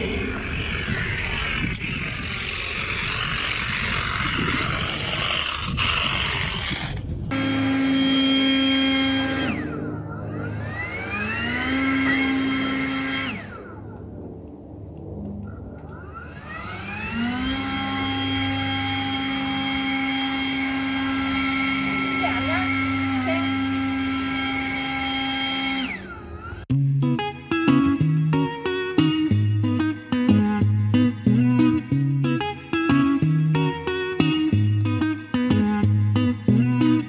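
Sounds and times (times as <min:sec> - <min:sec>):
lawn mower motor whining: 0:00.0 - 0:26.7.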